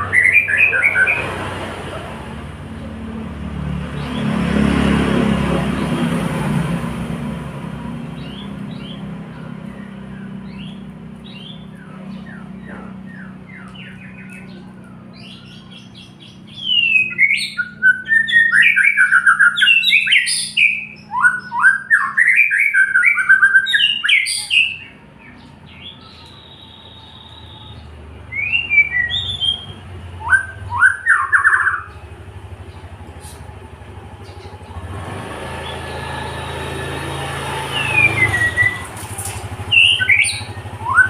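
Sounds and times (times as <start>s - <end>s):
bird song of whistled phrases: 0.0s - 1.3s, 8.2s - 32.1s, 37.6s - 39.0s, 39.6s - 41.0s
bird call notes: 0.0s - 2.1s, 7.9s - 41.0s.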